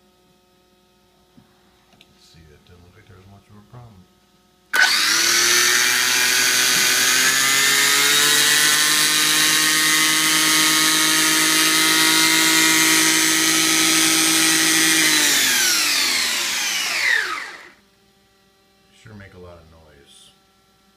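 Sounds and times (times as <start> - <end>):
electric motor whine: 4.8 - 17.8.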